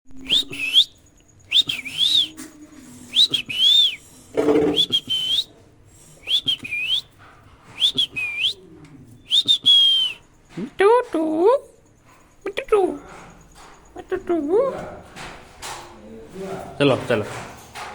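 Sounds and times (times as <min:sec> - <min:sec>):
parrot whistling: 0:00.2 - 0:02.4, 0:03.1 - 0:05.5, 0:06.2 - 0:07.1, 0:07.8 - 0:08.6, 0:09.2 - 0:10.3.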